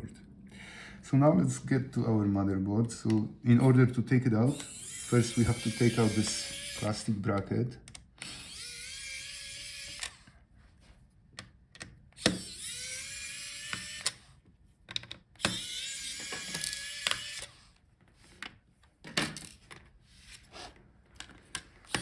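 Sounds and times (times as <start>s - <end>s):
electric screwdriver motor whine: 4.5s - 7.1s, 8.2s - 10.3s, 12.2s - 14.3s, 15.4s - 17.6s
clicks and taps of screws: 11.3s - 12.4s, 14.8s - 15.6s.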